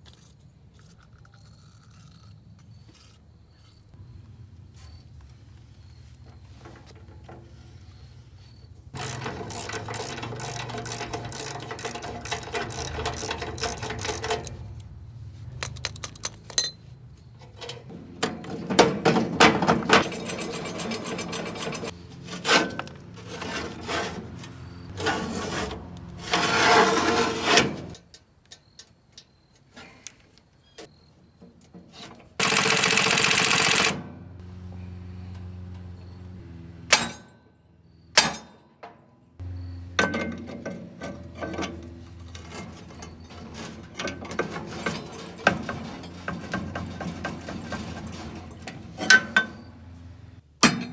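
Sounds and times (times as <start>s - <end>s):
tools scraping and rasping: 7.5s - 14.8s, 15.6s - 28.0s, 41.0s - 49.7s.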